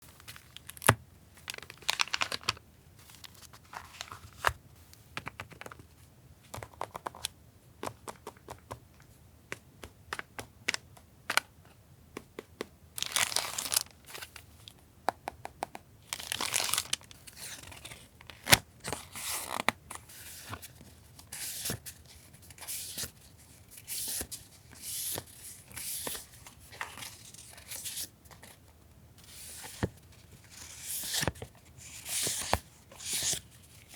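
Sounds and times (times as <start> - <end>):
paper crinkling and tearing: 16.2 - 19.6
paper rustling: 29.2 - 33.9.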